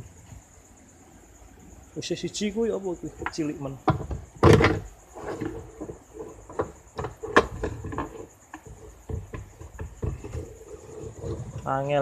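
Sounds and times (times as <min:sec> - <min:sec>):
faint high-pitched whine: 0:00.0 - 0:12.0
hands knocking and scraping in plastic drum: 0:03.2 - 0:12.0.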